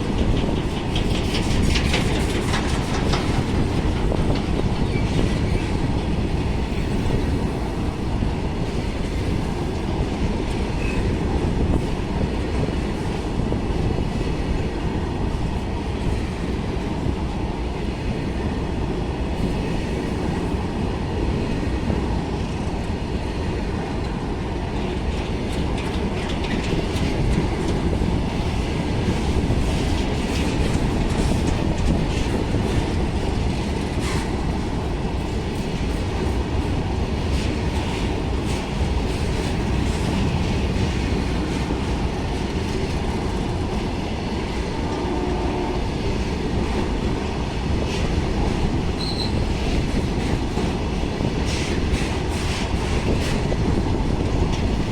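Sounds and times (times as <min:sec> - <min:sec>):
wheels clacking over rail joints: 0:00.0 - 0:08.0, 0:24.0 - 0:44.9.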